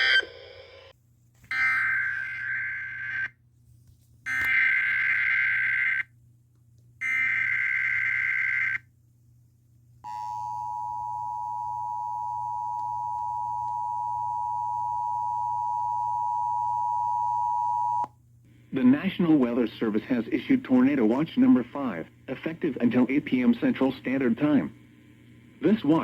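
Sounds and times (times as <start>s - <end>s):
warbling data burst screech: 0.0s - 0.9s.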